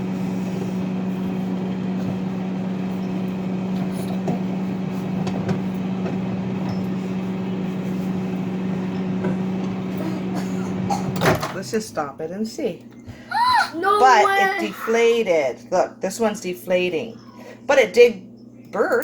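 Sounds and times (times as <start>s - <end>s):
microwave oven humming: 0.0s - 19.0s.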